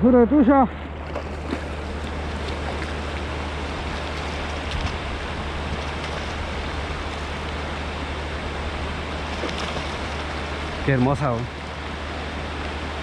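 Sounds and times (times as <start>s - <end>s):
river rushing: 0.8s - 13.0s.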